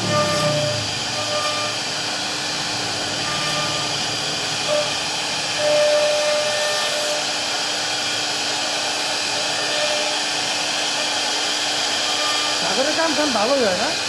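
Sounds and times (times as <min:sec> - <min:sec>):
short whining tones: 0:00.0 - 0:01.9, 0:03.1 - 0:07.2
wood router hissing whir: 0:00.0 - 0:14.0.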